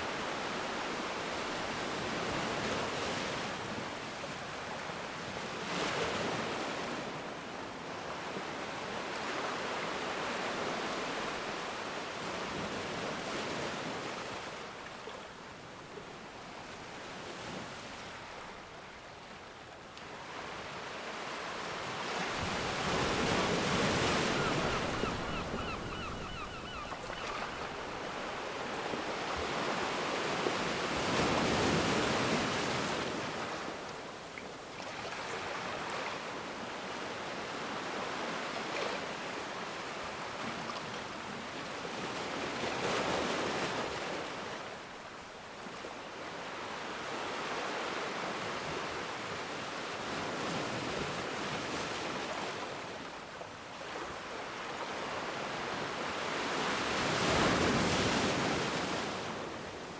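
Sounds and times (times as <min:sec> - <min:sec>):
ocean waves breaking: 0:20.1 - 0:33.4.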